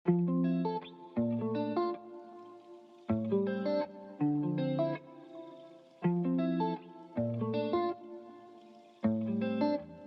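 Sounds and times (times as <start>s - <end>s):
plucked string notes: 6.0s - 10.0s.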